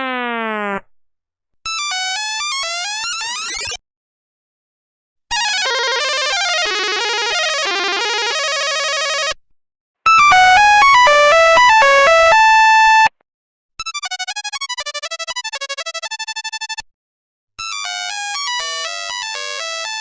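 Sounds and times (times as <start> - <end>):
monophonic ringtone melodies: 10.1 - 13.1.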